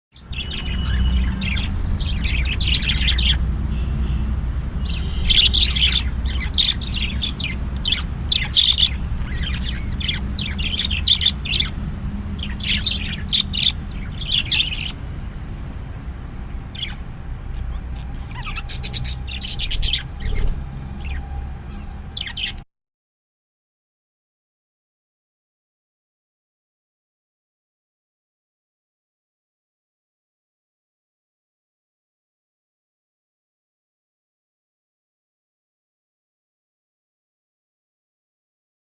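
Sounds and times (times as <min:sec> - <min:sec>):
budgies chirping and chattering: 0:00.2 - 0:15.0, 0:16.4 - 0:22.6.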